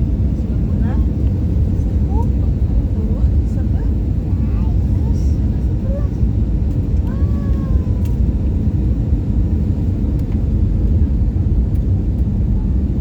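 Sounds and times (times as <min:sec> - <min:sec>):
aircraft engines rumbling in cabin: 0:00.0 - 0:13.0.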